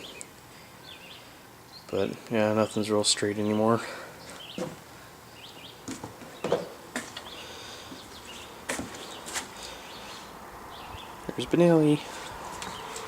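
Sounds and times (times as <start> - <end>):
bird chirps: 0.0 - 2.1, 5.3 - 11.2.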